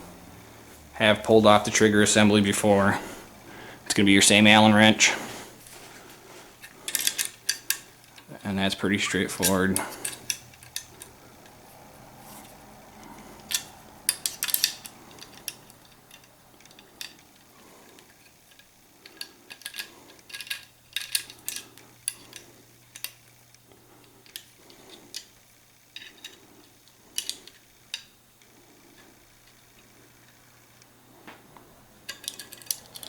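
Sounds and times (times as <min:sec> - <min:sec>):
soft rubbing sounds: 0:00.0 - 0:06.9, 0:11.1 - 0:14.0.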